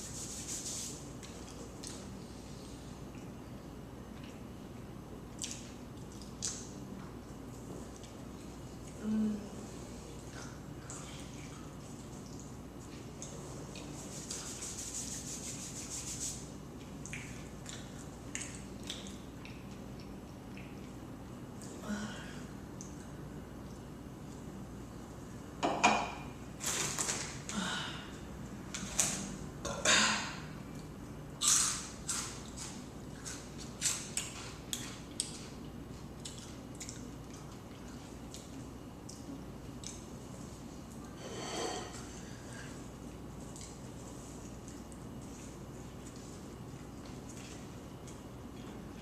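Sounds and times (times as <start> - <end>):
person chewing pizza: 1.1 - 3.4, 4.0 - 14.7, 16.7 - 21.8, 30.7 - 41.2, 42.0 - 49.0
mouth chewing food: 32.4 - 40.1.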